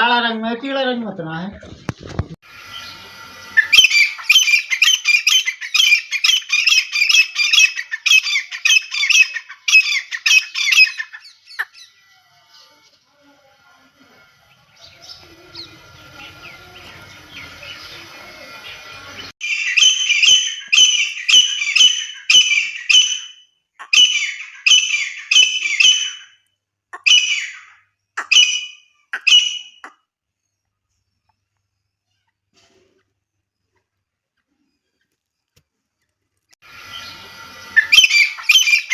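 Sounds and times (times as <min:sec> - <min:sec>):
francolin calling: 0:02.6 - 0:12.0, 0:14.9 - 0:26.4, 0:27.0 - 0:30.0, 0:36.8 - 0:38.9.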